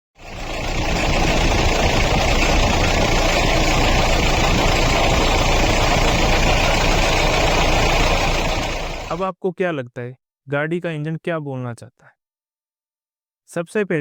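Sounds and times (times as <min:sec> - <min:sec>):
engine idling: 0:00.2 - 0:09.2
water pump mechanical noise: 0:00.2 - 0:09.2.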